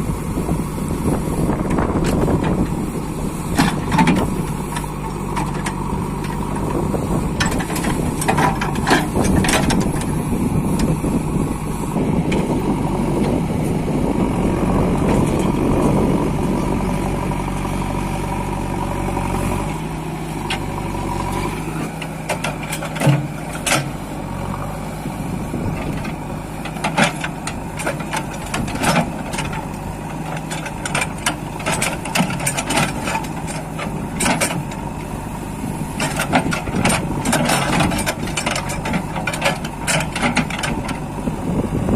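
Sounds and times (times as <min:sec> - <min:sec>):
diesel engine running: 0:00.0 - 0:41.9
metallic clanks from digging gear: 0:07.4 - 0:10.1, 0:22.0 - 0:24.0, 0:25.9 - 0:34.8, 0:36.0 - 0:41.0.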